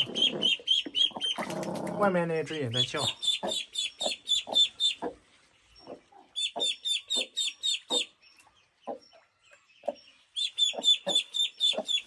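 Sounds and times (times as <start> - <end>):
ducklings peeping shrilly: 0.0 - 1.7, 2.4 - 12.0
hen duck clucking: 0.0 - 1.7, 2.7 - 5.2, 5.8 - 8.2, 9.8 - 12.0.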